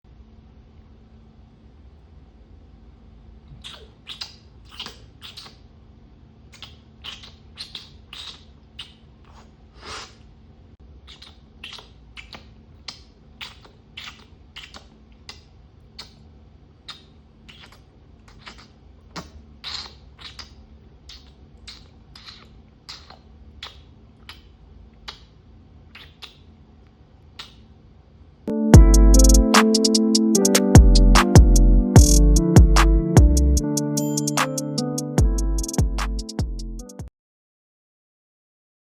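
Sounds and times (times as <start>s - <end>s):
wet tongue-clicking licking sounds: 3.5s - 5.6s, 6.6s - 10.2s, 11.1s - 16.2s, 16.9s - 26.5s.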